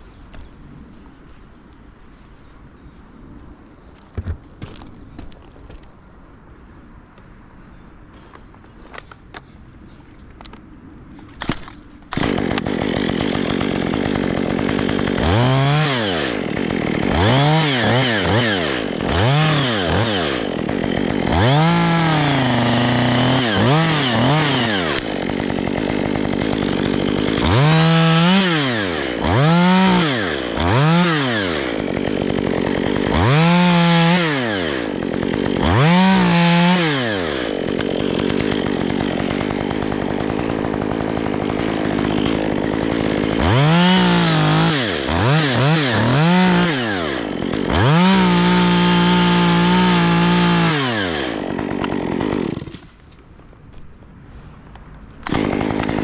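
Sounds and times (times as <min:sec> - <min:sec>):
chainsaw revving: 0:12.1 - 0:53.0, 0:55.2 - 0:56.0.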